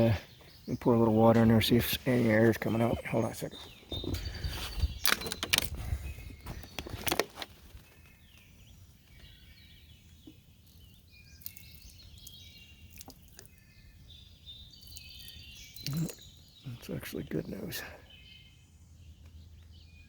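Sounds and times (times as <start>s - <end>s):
birds chirping: 0.0s - 20.0s
handling knocks and thumps: 2.1s - 7.8s.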